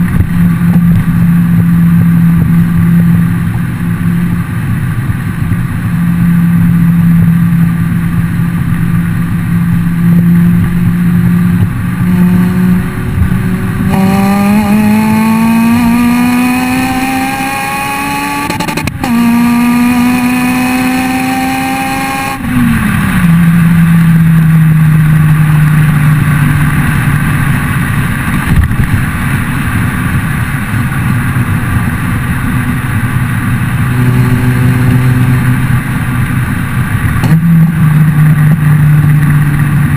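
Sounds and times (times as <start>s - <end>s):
car exhaust revving: 0.0s - 39.9s
exhaust crack on upshift: 25.1s - 39.9s.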